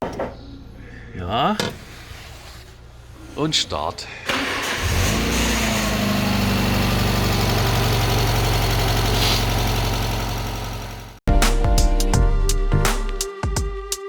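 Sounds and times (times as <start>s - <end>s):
car engine idling: 4.3s - 11.2s
starter motor cranking: 4.3s - 11.2s.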